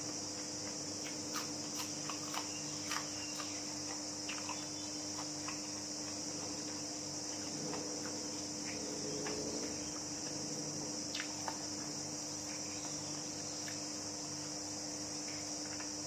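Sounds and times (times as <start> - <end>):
insects chirring: 0.0 - 16.0
low steady hum: 0.0 - 16.0.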